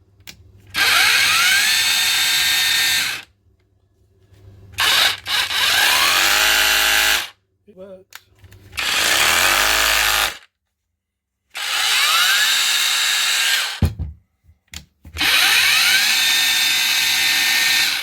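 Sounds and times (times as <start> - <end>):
rotary hammer motor whining: 0.8 - 3.2, 4.8 - 7.3, 11.6 - 13.8, 15.2 - 18.0.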